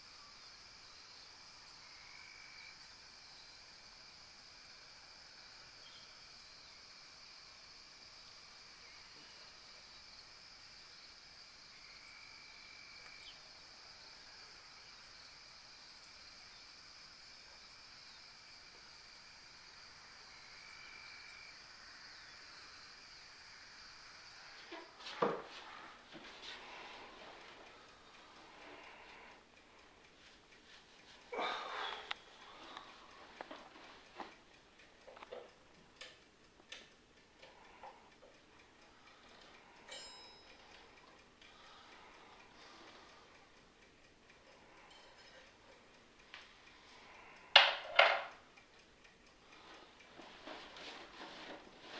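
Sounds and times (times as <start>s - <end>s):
faint background hiss: 0.0s - 51.9s
alarm clock ticking: 32.0s - 51.9s.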